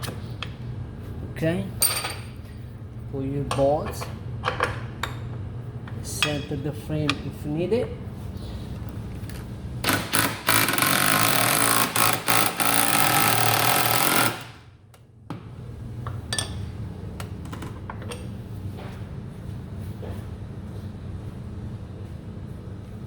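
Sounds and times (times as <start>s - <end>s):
power tool running: 9.8s - 14.6s.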